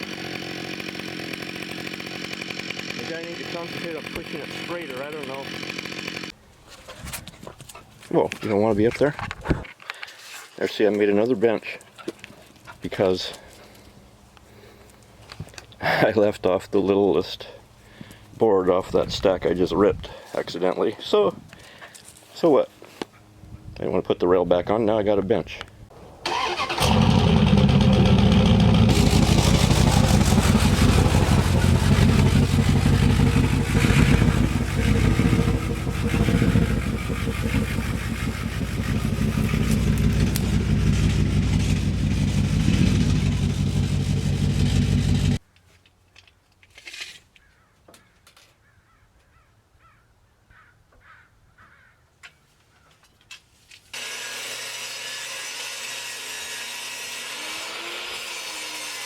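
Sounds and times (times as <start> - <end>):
chainsaw engine running: 0.0 - 6.4, 26.2 - 45.4, 54.0 - 59.0.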